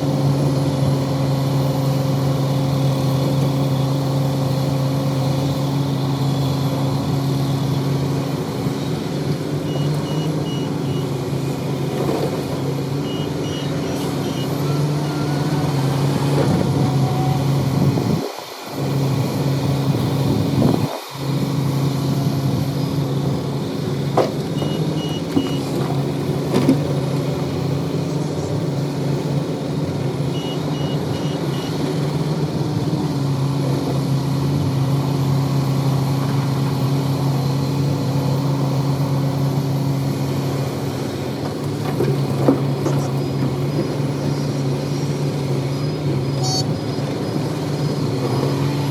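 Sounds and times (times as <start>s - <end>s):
heavy diesel engine running: 0.0s - 48.9s
high warning alarm beeps: 9.6s - 11.1s, 13.0s - 15.4s, 24.6s - 25.7s, 30.3s - 31.8s, 46.4s - 46.8s.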